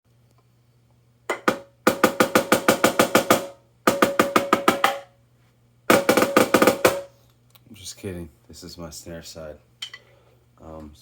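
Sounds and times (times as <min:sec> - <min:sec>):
snare drum strokes: 0:05.9 - 0:07.2.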